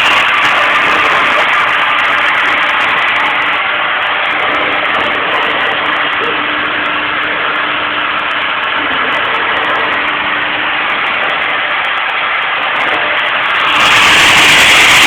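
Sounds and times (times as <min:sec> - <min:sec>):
milling machine spindle motor running: 0:00.0 - 0:15.0.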